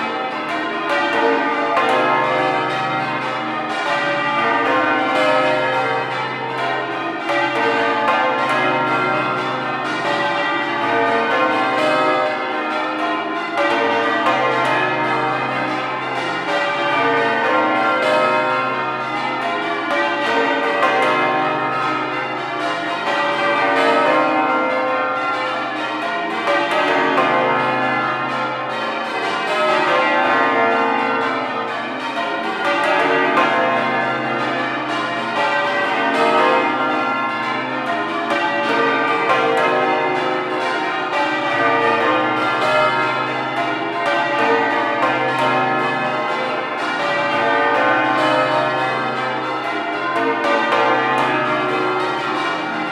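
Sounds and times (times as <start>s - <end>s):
church bells change ringing: 0.0s - 52.9s.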